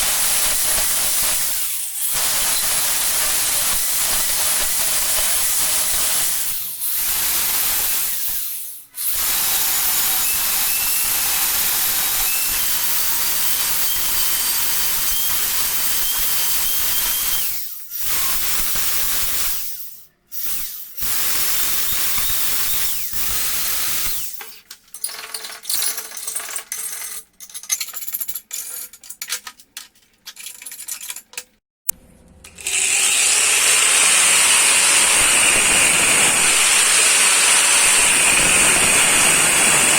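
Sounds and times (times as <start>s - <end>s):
tool hissing: 32.6s - 39.9s.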